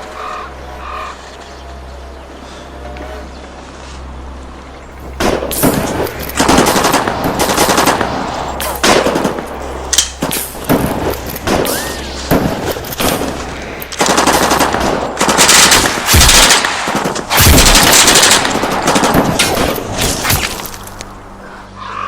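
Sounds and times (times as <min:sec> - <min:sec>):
submachine gun automatic fire: 0:05.1 - 0:21.0.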